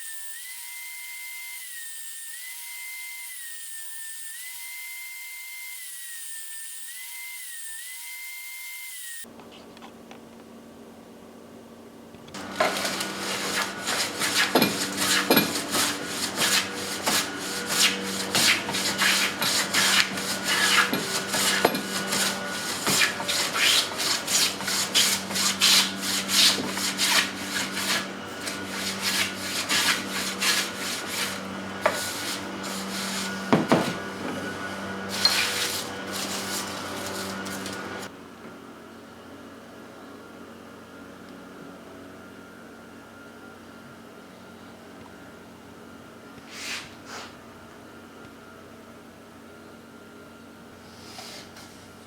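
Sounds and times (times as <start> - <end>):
electric sander on wood: 12.3 - 38.1.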